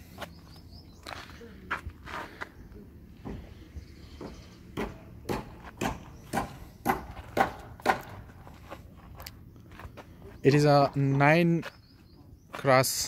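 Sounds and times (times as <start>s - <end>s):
crunching footsteps: 0.0s - 13.0s.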